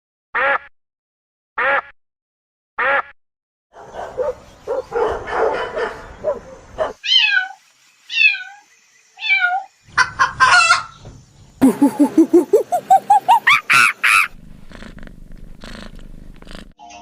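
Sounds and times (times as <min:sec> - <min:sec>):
animal calls: 0:11.6 - 0:14.9.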